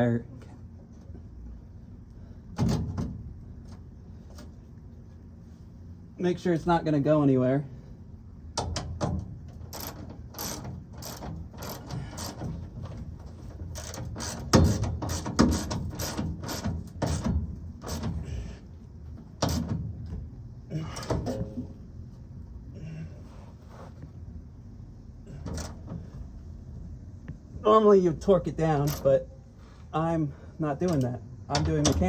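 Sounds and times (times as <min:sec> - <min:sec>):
hand ratchet clicking: 0:09.5 - 0:13.0, 0:13.7 - 0:18.2.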